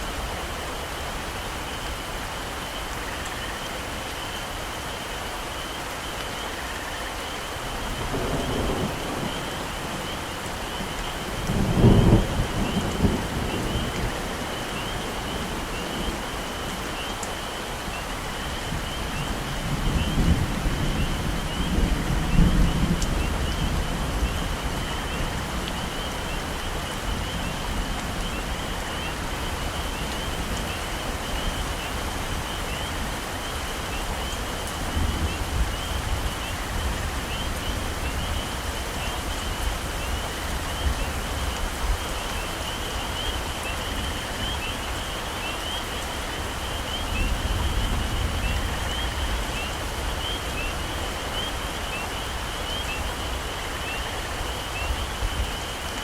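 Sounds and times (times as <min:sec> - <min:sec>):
heavy rain on foliage: 0:00.0 - 0:56.0
thunder rumbling: 0:08.0 - 0:10.1, 0:11.4 - 0:14.4.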